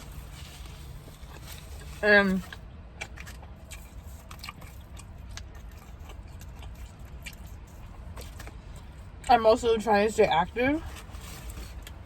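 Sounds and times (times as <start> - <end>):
low steady hum: 0.0 - 12.0
chewing with wet mouth clicks: 2.4 - 9.4.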